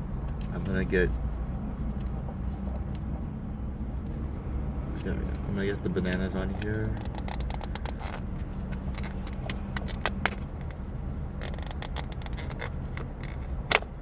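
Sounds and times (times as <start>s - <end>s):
steady low hum: 0.0s - 14.0s
plastic packaging clicks and crinkles: 6.6s - 8.2s, 11.4s - 13.8s.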